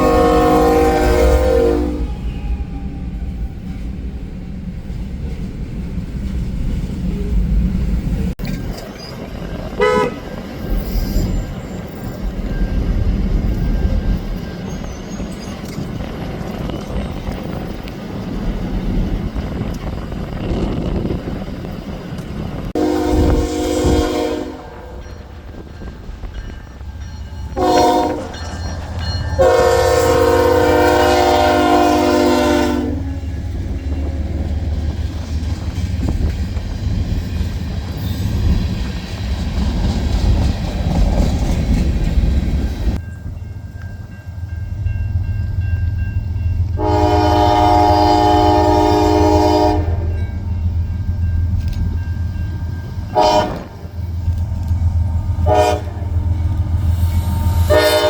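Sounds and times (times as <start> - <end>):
train air horn blasts: 0.0 - 2.3, 9.7 - 10.3, 22.8 - 25.0, 27.6 - 28.4, 29.4 - 33.3, 46.8 - 50.2, 53.1 - 53.8, 55.4 - 56.2, 56.9 - 58.0.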